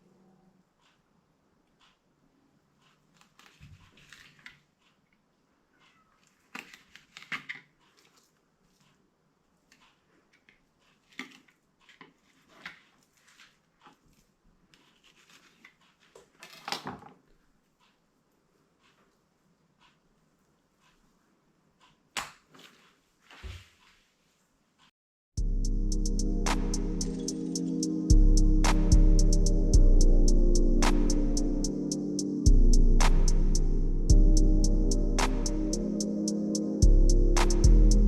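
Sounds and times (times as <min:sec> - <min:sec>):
handling clicks and rustling scrapes: 0:02.8 - 0:05.1, 0:05.9 - 0:18.0.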